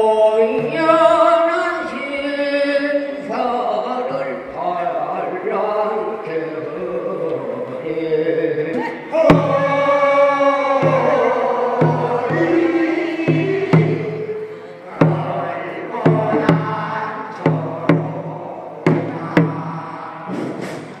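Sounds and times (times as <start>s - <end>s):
group chanted singing: 3.0s - 21.0s
sharp drum beats: 9.2s - 21.0s.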